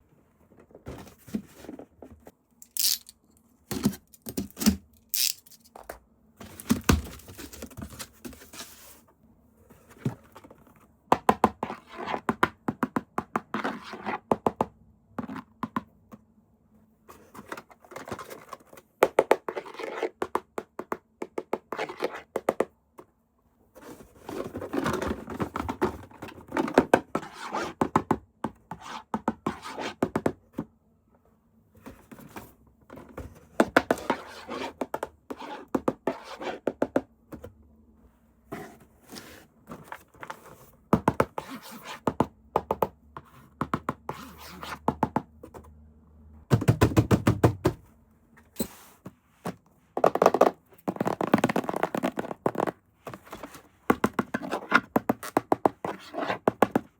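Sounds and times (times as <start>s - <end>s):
packaging clicks and scrapes: 2.6s - 5.8s.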